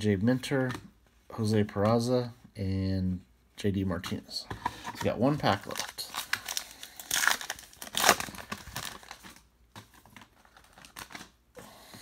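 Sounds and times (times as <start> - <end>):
wrapper crinkling and tearing: 5.3 - 11.4.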